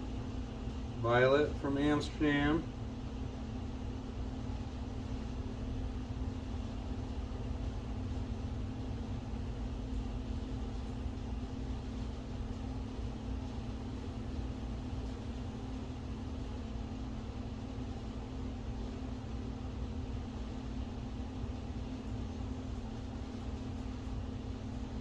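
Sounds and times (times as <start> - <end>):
machine hum and hiss: 0.0 - 25.0.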